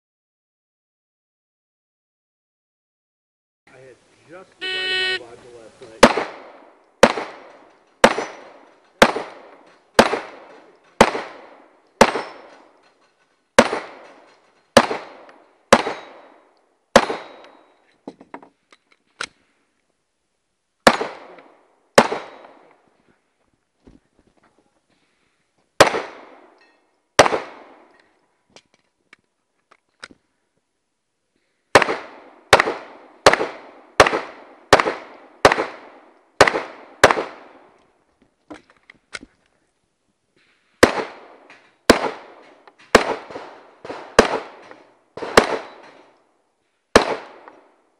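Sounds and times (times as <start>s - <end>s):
pistol shots echoing: 6.0s - 12.8s, 13.6s - 17.6s, 20.8s - 22.7s, 25.8s - 26.6s, 27.2s - 27.9s, 31.7s - 37.7s, 40.8s - 46.2s, 46.9s - 47.7s.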